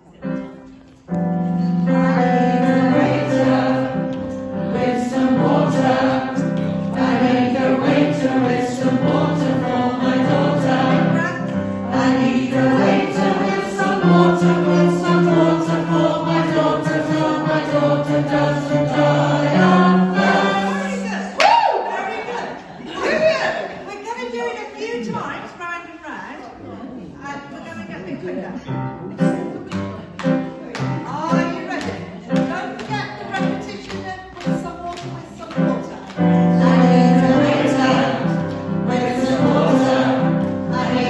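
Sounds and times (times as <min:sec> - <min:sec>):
group of voices singing: 0:01.8 - 0:21.4, 0:35.2 - 0:41.0.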